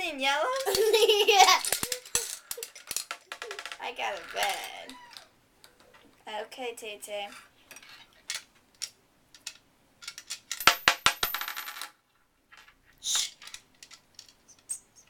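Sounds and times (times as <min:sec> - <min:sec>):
coin rattling through metal mechanism: 0:00.5 - 0:05.2, 0:07.7 - 0:12.0.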